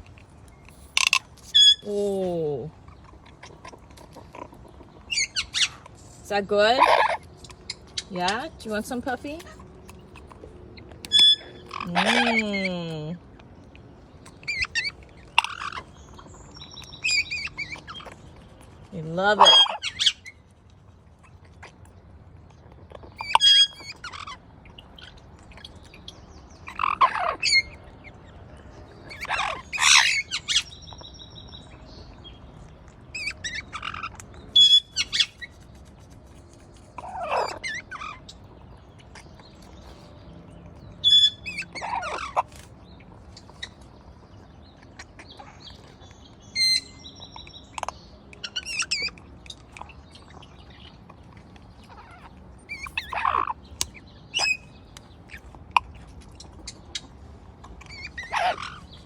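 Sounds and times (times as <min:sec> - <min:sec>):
parrot chirping and whistling: 0:54.3 - 0:54.8.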